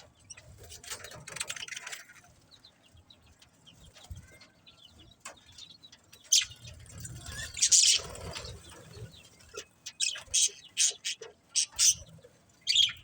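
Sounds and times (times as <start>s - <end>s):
budgerigars chirping: 6.2s - 13.0s.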